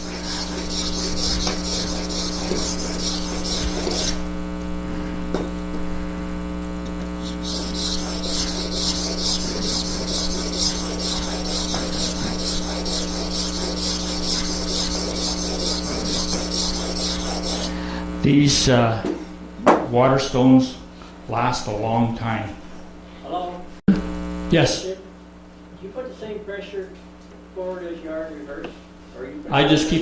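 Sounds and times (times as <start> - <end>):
blade scraping on water stone: 0.0 - 4.2, 7.4 - 17.7
electrical hum: 0.0 - 30.0.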